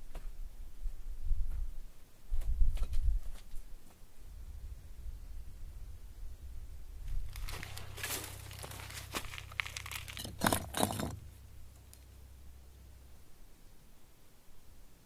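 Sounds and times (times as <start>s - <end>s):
dry material rustling and crackling: 7.1s - 11.2s.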